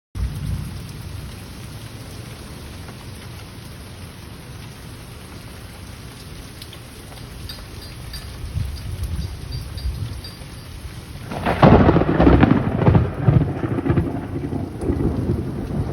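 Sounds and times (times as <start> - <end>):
heavy rain hissing: 0.2 - 15.9
thunder rolling: 8.4 - 15.9.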